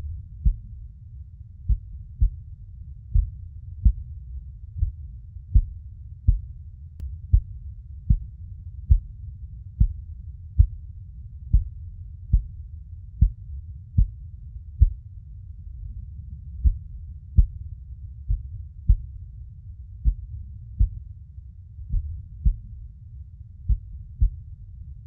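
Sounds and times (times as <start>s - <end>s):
heartbeat thumps: 0.0s - 0.8s, 1.7s - 2.5s, 3.1s - 6.6s, 7.3s - 9.2s, 9.8s - 10.8s, 11.5s - 12.6s, 13.2s - 14.2s, 14.8s - 15.0s, 16.6s - 19.3s, 20.0s - 21.1s, 21.8s - 22.8s, 23.7s - 24.5s
steady low rumble: 0.0s - 25.0s.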